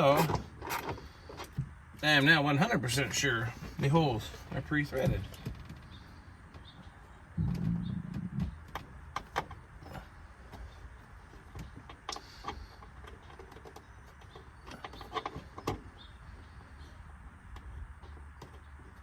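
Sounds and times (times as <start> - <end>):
handling noise rumble: 2.7 - 12.0.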